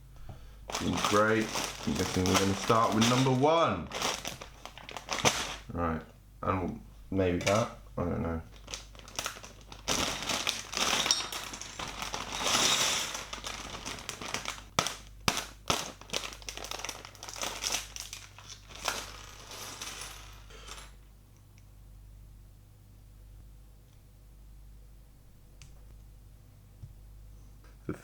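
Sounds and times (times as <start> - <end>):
plastic bricks clattering: 0.7 - 5.6, 8.6 - 20.9
plastic bag crinkling: 0.7 - 5.8, 7.2 - 20.9.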